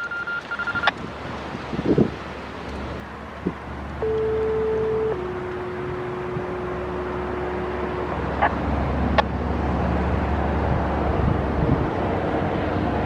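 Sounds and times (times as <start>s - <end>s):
outdoor warning siren tone: 4.0s - 9.2s.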